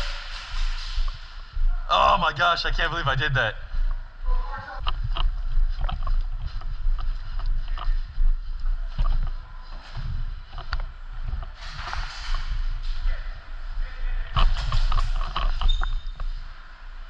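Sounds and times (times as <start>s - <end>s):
wind rumbling on microphone: 3.6s - 17.0s.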